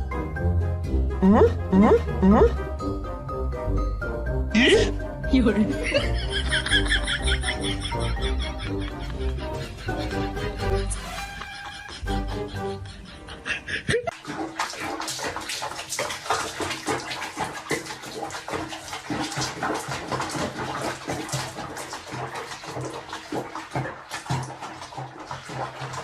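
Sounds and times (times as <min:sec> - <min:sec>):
music: 0:00.0 - 0:14.0
water splashing and sloshing: 0:04.4 - 0:26.0.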